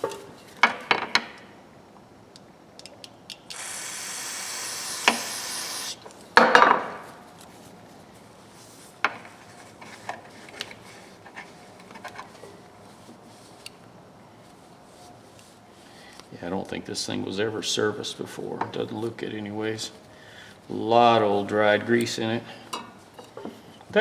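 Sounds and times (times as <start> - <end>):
aerosol spray hiss: 3.5 - 6.0.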